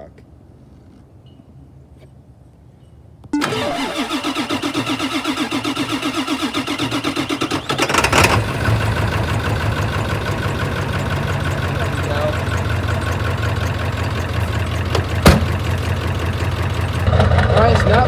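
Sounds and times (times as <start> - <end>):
diesel engine cranking on starter: 3.4 - 18.0
diesel engine idling: 3.4 - 18.0.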